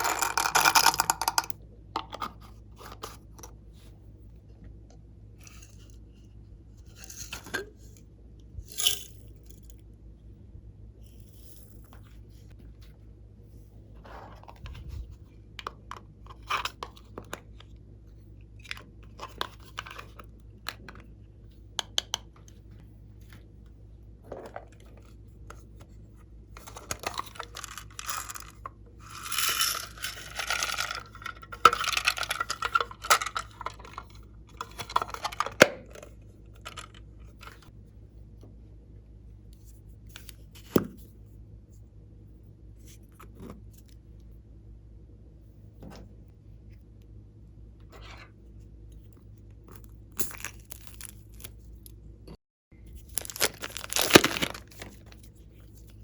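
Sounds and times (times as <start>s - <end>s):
slime handling noise: 53.0s - 55.2s.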